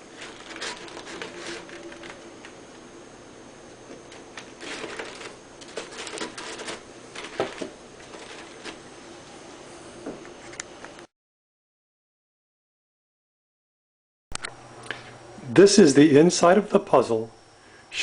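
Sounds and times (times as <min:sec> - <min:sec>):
card clicking and rustling: 0:00.1 - 0:02.6, 0:03.9 - 0:08.8.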